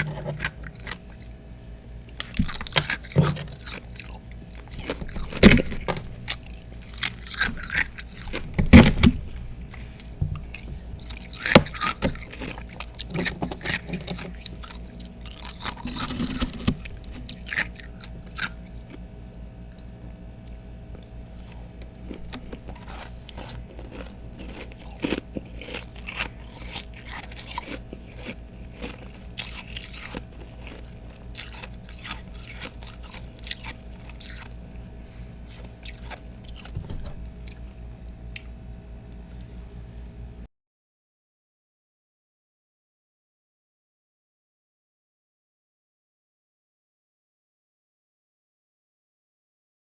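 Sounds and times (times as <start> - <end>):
person crunching ice: 15.3 - 18.6, 22.1 - 34.5.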